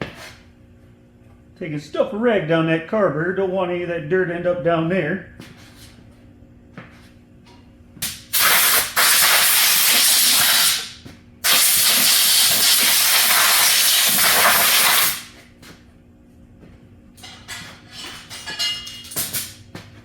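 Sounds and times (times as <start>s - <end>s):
compressed air blasts hissing: 8.3s - 15.3s.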